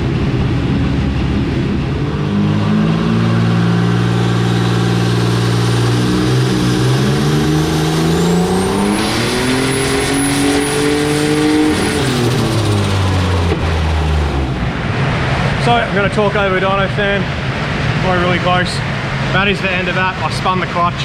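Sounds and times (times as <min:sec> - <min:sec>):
engine revving on a dyno: 0:00.0 - 0:15.6.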